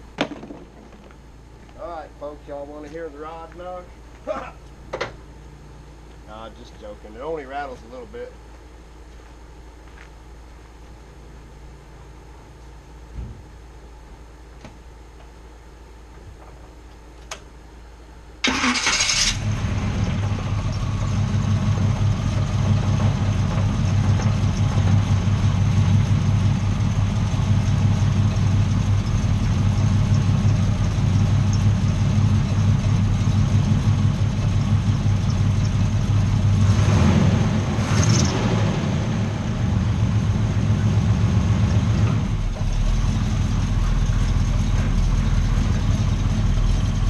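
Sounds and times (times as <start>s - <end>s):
truck engine starting and idling: 18.4s - 47.0s.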